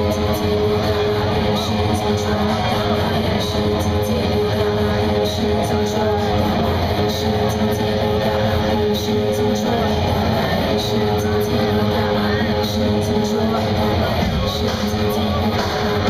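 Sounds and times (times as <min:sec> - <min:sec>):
live band with guitar: 0:00.0 - 0:16.0.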